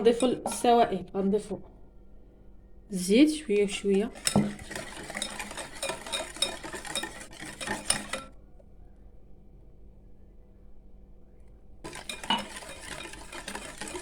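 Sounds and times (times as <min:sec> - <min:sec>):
utensil scraping mixing bowl: 0:00.0 - 0:00.9, 0:03.4 - 0:08.4, 0:11.9 - 0:14.0.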